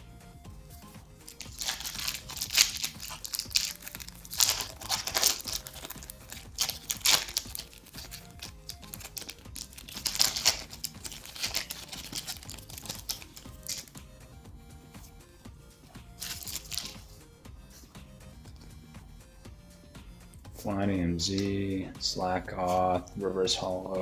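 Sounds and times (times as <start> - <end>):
soft background music: 0.0 - 24.0
foil wrapper tearing and crinkling: 0.9 - 14.0, 16.2 - 17.1.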